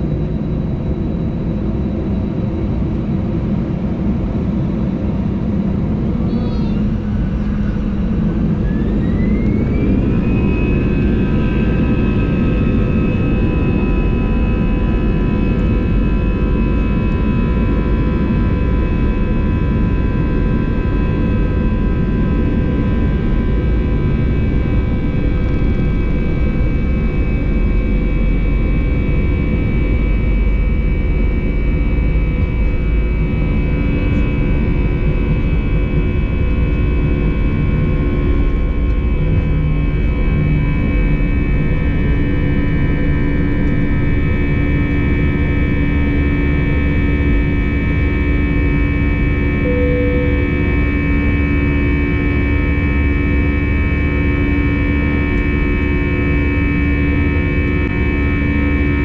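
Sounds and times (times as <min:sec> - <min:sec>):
jet engines spooling up: 0:01.1 - 0:20.5, 0:22.4 - 0:30.9.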